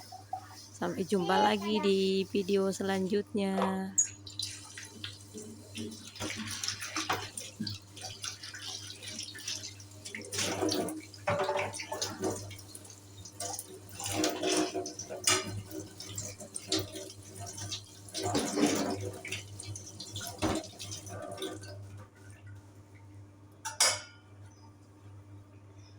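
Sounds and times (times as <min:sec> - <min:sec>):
tap water splashing in sink: 0:04.0 - 0:21.8.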